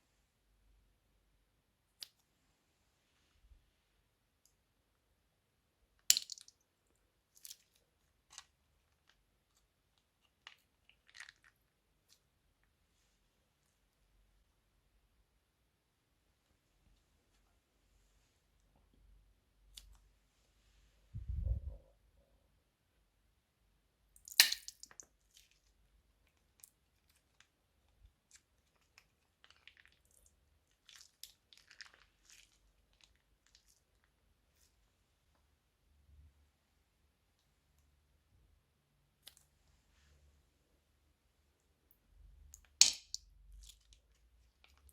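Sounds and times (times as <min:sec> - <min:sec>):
slime crackling and popping: 0:24.2 - 0:25.6
crunchy slime crackling: 0:28.7 - 0:33.7.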